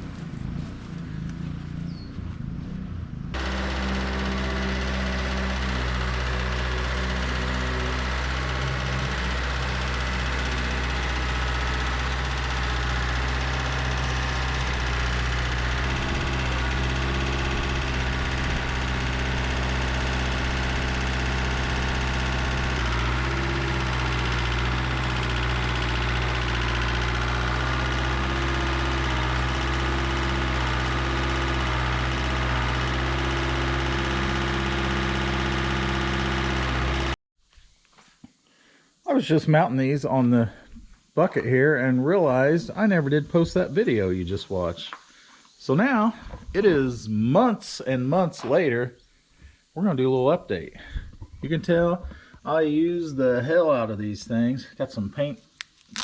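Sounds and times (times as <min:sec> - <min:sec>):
tractor engine running: 0:00.0 - 0:37.2, 0:55.6 - 0:56.0.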